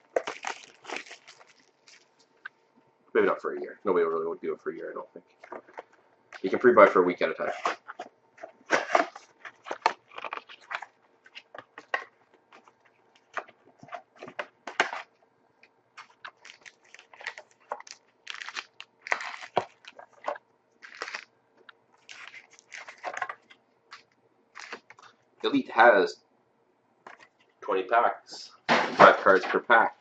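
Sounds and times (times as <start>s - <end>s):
packaging crinkling and tearing: 0.0s - 2.4s, 8.7s - 13.6s, 16.0s - 21.3s, 22.0s - 25.1s.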